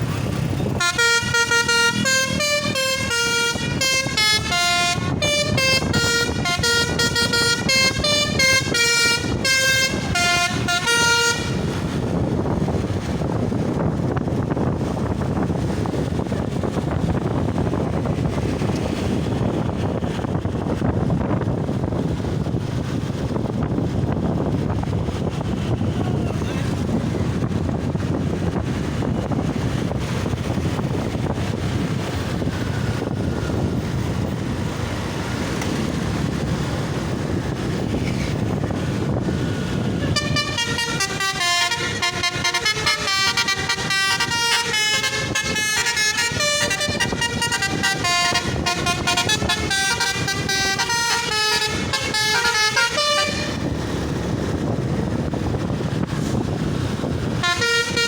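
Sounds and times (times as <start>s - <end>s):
multi-tone horn playing a tune: 0.8s - 12.0s, 40.0s - 53.8s, 57.4s - 58.0s.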